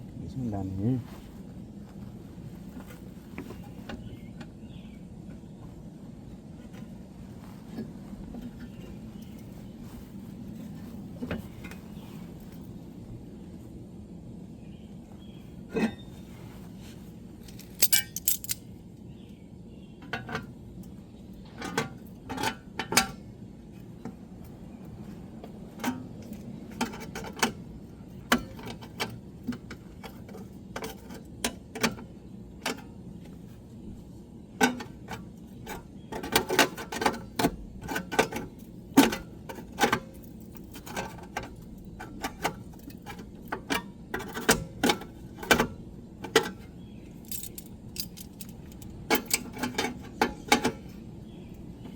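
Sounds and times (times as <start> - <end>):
metallic clicks of hand tools: 17.5 - 18.6.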